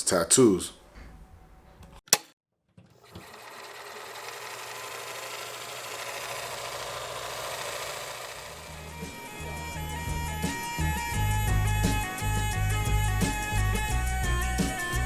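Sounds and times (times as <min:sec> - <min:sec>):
sharp click: 0:02.1 - 0:02.4
tattoo machine buzzing: 0:03.1 - 0:09.3.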